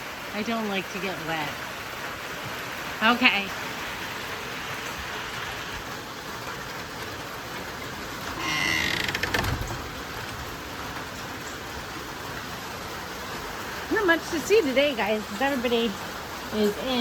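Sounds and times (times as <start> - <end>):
heavy rain falling: 0.0 - 17.0
short high squeak: 8.4 - 9.8.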